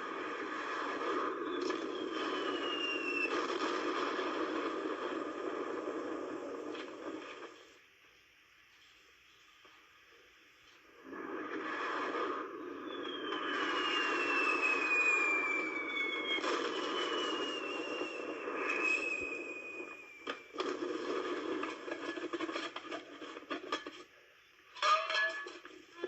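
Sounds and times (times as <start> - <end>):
rockets whistling: 0.0 - 7.8, 11.0 - 23.8
firework crackles and pops: 0.0 - 7.9, 10.6 - 26.0.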